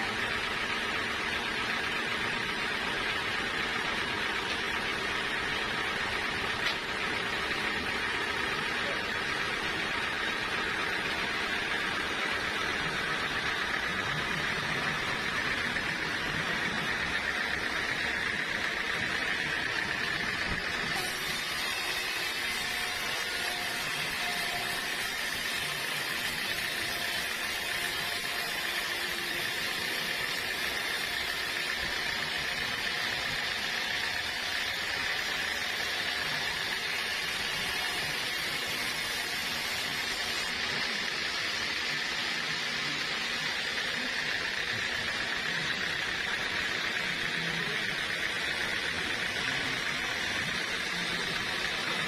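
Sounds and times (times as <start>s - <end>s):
sawmill saw running: 0.0s - 52.0s.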